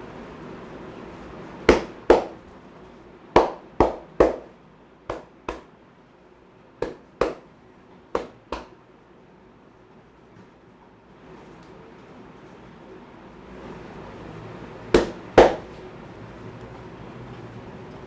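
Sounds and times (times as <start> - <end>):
hands slapping in massage: 1.7 - 2.5, 3.4 - 4.5, 5.1 - 5.7, 6.8 - 7.4, 8.2 - 8.7, 15.0 - 15.8.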